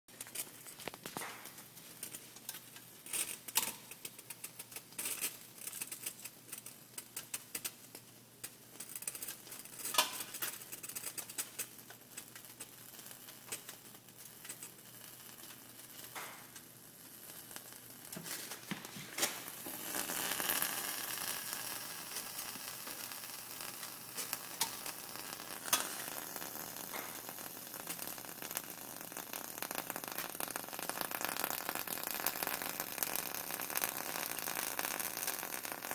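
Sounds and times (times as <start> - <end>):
crackling and ticking clicks: 0.1 - 35.9
steady high hiss: 6.8 - 35.2.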